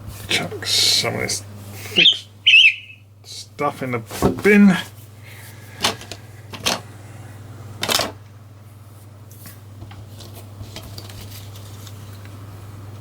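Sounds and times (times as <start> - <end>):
hard plastic clattering: 5.8 - 6.8.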